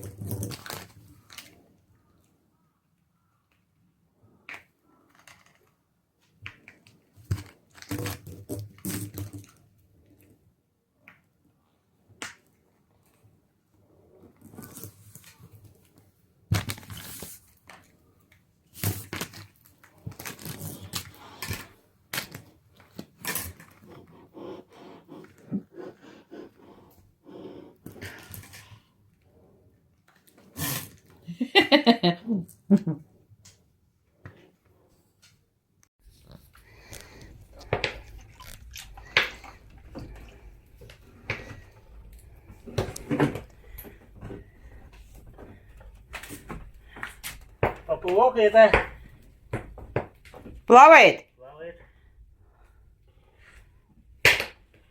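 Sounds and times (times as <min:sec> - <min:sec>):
hard objects knocking and clunking: 0:36.8 - 0:50.7.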